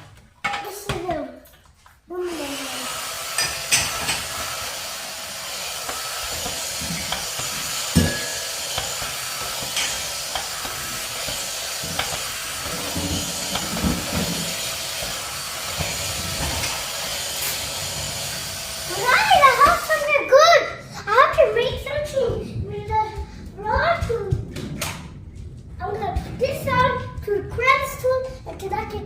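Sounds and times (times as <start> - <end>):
vacuum cleaner motor running: 2.2 - 20.1.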